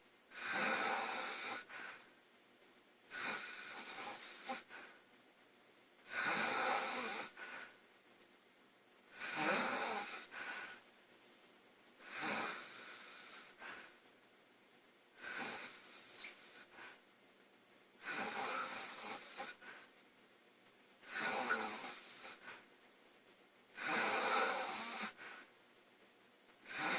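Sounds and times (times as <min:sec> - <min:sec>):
woman snoring: 0:00.3 - 0:01.8, 0:03.1 - 0:04.7, 0:06.1 - 0:07.6, 0:09.1 - 0:10.7, 0:12.0 - 0:13.6, 0:15.2 - 0:16.7, 0:18.0 - 0:19.6, 0:21.0 - 0:22.6, 0:23.8 - 0:25.4, 0:26.7 - 0:26.9.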